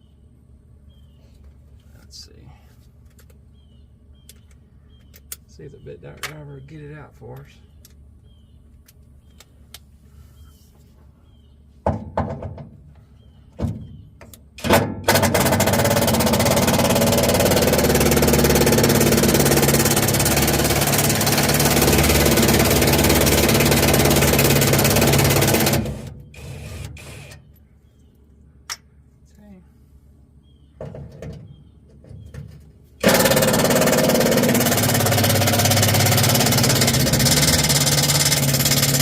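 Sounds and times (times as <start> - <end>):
cordless bit driver running: 14.6 - 27.4, 33.0 - 39.0.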